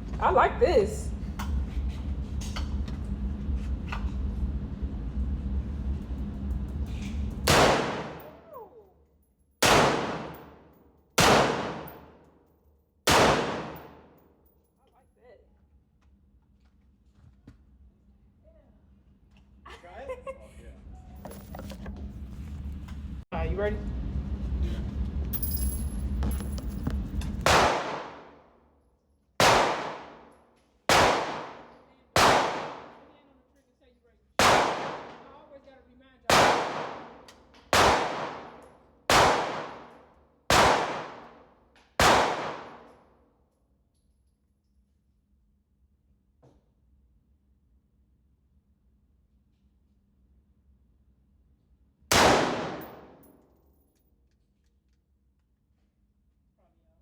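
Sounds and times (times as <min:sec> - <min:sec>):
low background rumble: 0:00.0 - 0:08.9, 0:17.8 - 0:28.3
gunshots echoing indoors: 0:07.4 - 0:08.5, 0:09.6 - 0:10.6, 0:11.2 - 0:12.2, 0:13.1 - 0:14.2, 0:27.4 - 0:28.4, 0:29.4 - 0:33.2, 0:34.4 - 0:35.4, 0:36.3 - 0:43.0, 0:52.1 - 0:53.4.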